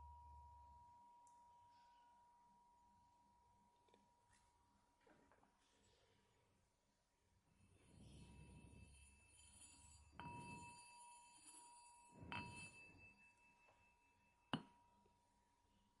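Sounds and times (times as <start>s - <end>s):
small bell ringing: 7.7s - 15.4s.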